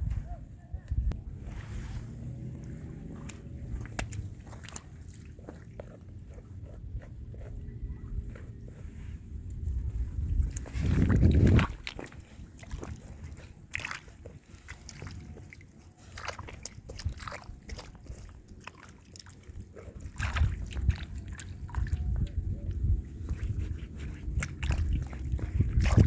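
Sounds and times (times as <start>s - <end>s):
low rumble: 0.0s - 5.4s, 6.4s - 13.4s
water sloshing and splashing: 1.4s - 6.8s, 8.5s - 26.0s.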